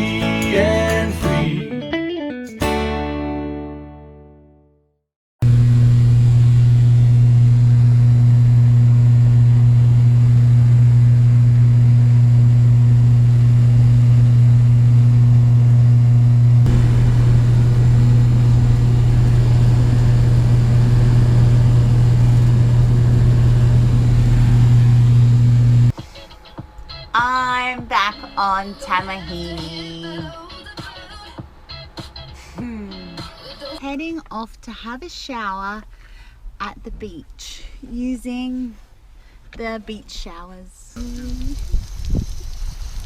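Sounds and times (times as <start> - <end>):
engine running steadily: 5.4 - 26.9.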